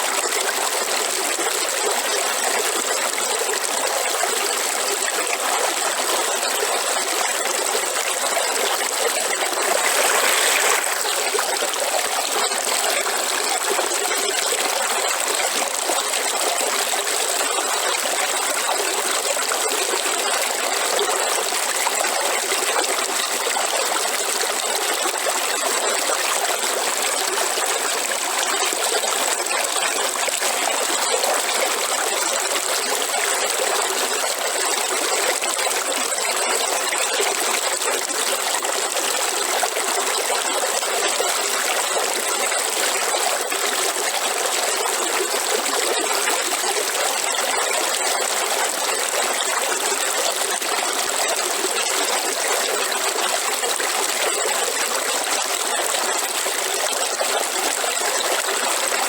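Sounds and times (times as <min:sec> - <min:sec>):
river water rushing: 0:09.5 - 0:11.1.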